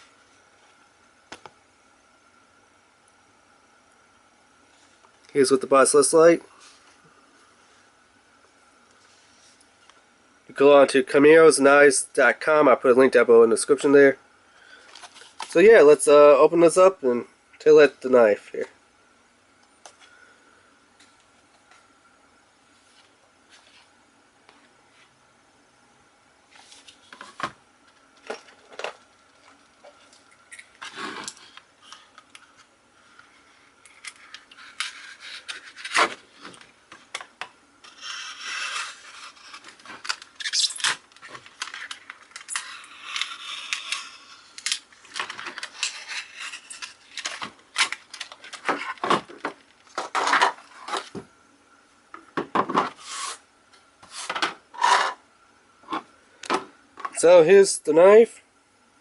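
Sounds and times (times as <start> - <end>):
scratchy handling noise: 28.2 - 37.2, 37.8 - 51.2, 52.8 - 53.4, 54.0 - 55.2.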